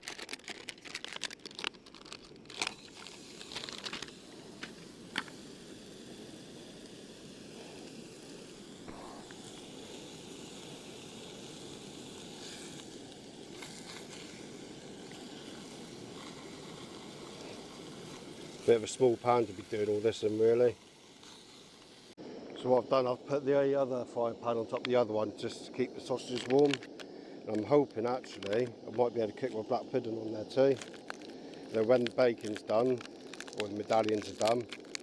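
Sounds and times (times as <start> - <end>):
plastic packet crinkling and tearing: 0.0 - 5.4, 26.2 - 35.0
bacon sizzling in a pan: 1.3 - 22.2, 27.6 - 35.0.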